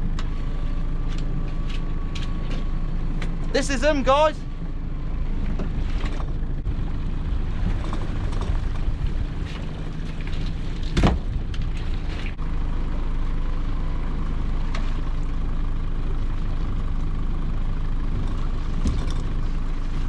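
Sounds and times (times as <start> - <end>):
boat engine running: 0.0 - 20.0
loud thump: 11.0 - 11.3.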